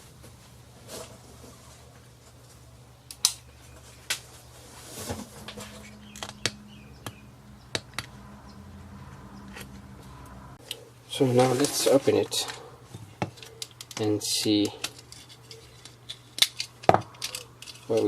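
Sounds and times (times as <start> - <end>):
plastic parts clicking: 13.3 - 18.0.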